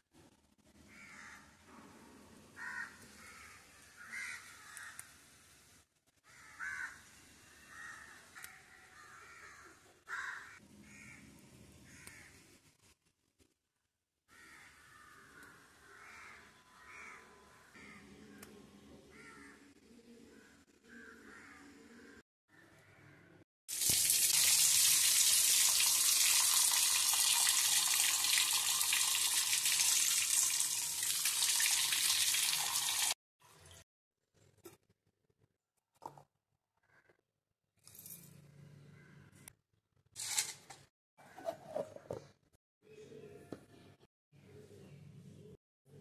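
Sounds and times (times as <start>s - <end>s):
crows cawing: 0.9s - 1.5s, 2.6s - 5.0s, 6.3s - 7.1s, 7.7s - 11.3s, 11.9s - 12.4s, 14.3s - 18.1s, 19.1s - 19.6s, 20.3s - 23.1s.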